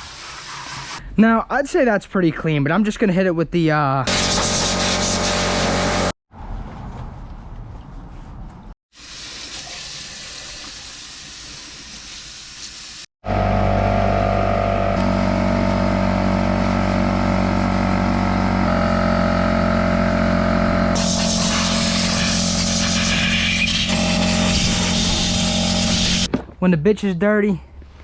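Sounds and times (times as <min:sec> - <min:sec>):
water spraying: 0:04.1 - 0:06.1, 0:21.0 - 0:26.3.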